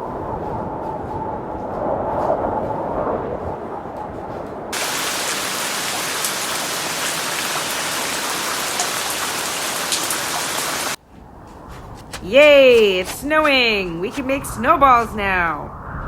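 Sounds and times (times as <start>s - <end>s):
steady rain falling: 4.7s - 11.0s.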